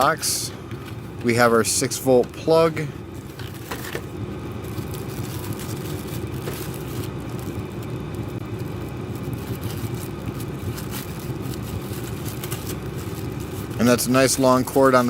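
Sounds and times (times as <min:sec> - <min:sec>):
motor vehicle rumble: 0:00.0 - 0:15.0.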